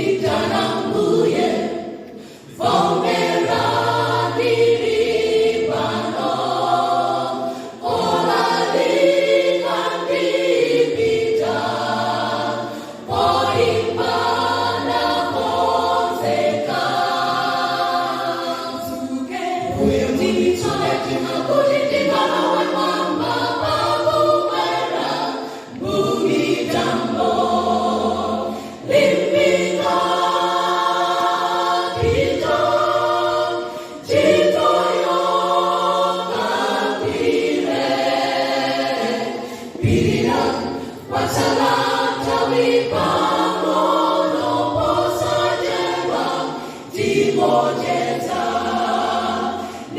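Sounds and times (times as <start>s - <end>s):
church choir singing in harmony: 0.0s - 49.9s.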